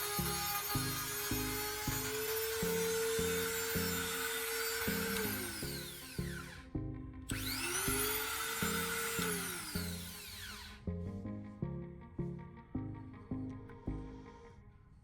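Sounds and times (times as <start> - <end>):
grinder motor whining: 0.0 - 10.9
background music with steady beat: 0.0 - 15.0.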